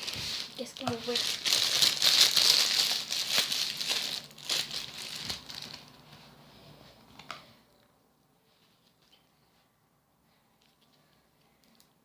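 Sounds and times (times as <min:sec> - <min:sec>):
crunchy bits crackling and popping: 0:00.0 - 0:06.0.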